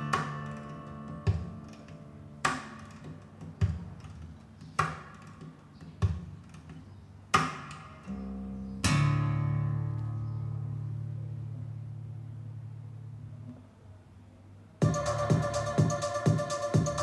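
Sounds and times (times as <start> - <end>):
acoustic guitar chords: 0.0 - 4.1, 8.1 - 13.3, 14.8 - 17.0.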